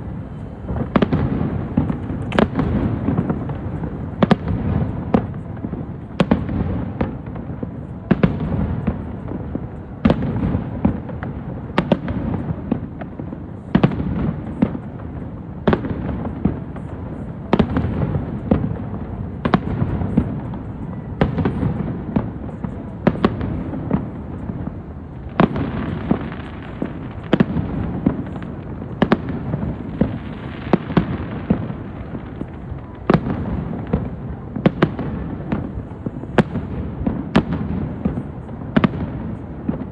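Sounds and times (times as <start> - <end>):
low rumble and echo: 0.0 - 6.6
fireworks bursting bangs: 0.0 - 39.9.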